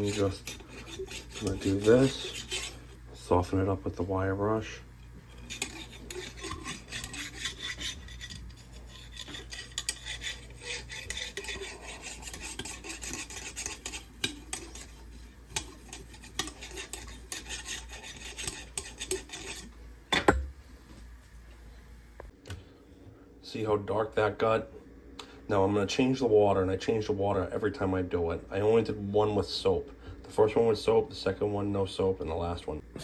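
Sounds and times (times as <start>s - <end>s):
wire brush scrubbing on steel: 0.0s - 3.7s, 4.6s - 19.8s.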